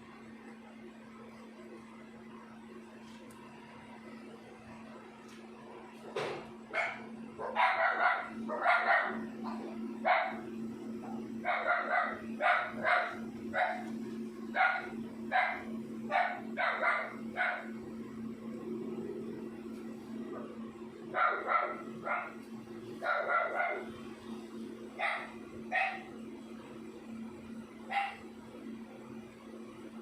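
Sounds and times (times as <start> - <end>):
dog barking: 6.7 - 10.5, 11.1 - 13.9, 14.5 - 17.7, 21.1 - 22.4, 23.0 - 23.9, 25.0 - 26.1, 27.9 - 28.3.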